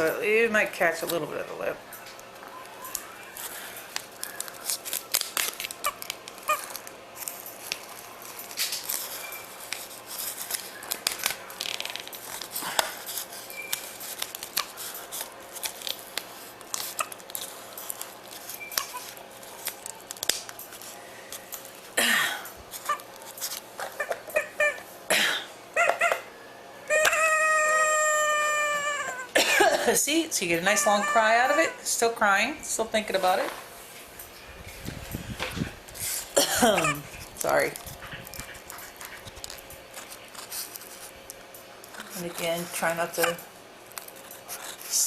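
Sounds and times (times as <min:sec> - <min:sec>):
duct tape crinkling: 0:00.0 - 0:24.9, 0:33.0 - 0:45.0
wailing baby cry: 0:26.9 - 0:29.4, 0:30.7 - 0:31.8
doll crier rustling and clicking: 0:36.8 - 0:45.0.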